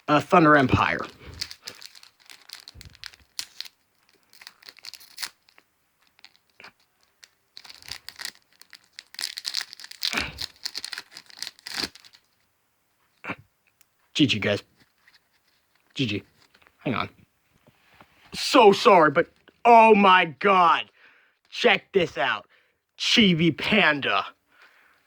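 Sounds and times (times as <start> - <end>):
foil pack tearing and crinkling: 0.8 - 12.4.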